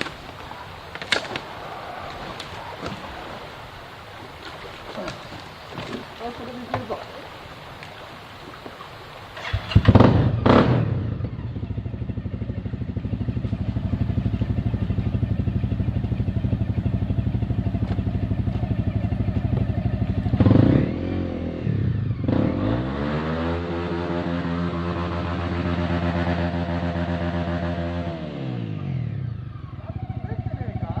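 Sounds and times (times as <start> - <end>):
motorcycle engine starting and idling: 9.2 - 23.3, 24.1 - 31.0
motorcycle engine revving: 9.2 - 31.0.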